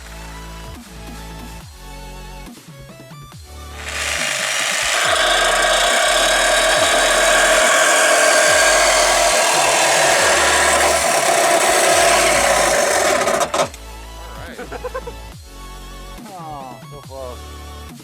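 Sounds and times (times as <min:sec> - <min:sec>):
power saw cutting sheet metal: 0:03.8 - 0:13.8.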